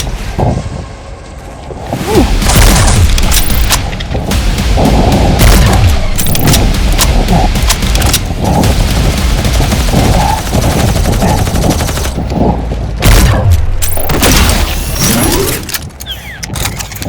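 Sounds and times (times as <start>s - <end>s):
heavy boom: 2.0s - 10.7s
rapid gunfire: 2.3s - 12.4s.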